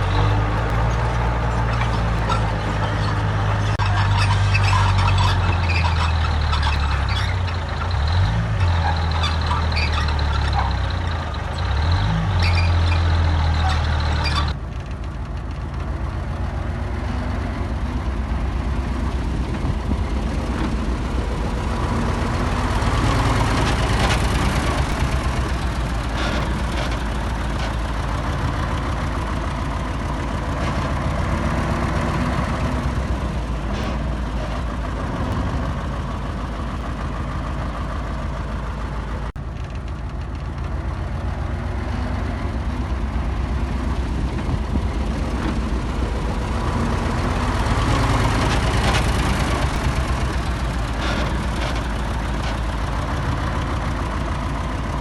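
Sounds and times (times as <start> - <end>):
diesel engine running steadily: 0.0 - 55.0
heavy diesel engine working: 0.0 - 55.0
machinery clanks and clicks: 0.0 - 55.0.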